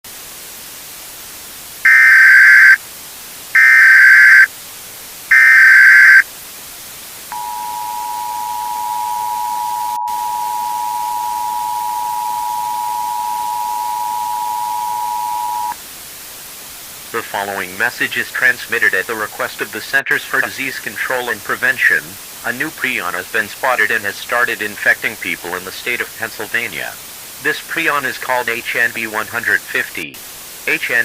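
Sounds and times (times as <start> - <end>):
steady hiss: 0.1 - 9.4, 10.2 - 31.0
digital data bursts: 1.9 - 2.8, 3.6 - 4.5, 5.3 - 6.2
two-tone attention signal: 1.9 - 2.8, 3.6 - 4.5, 5.3 - 6.2, 7.3 - 15.8.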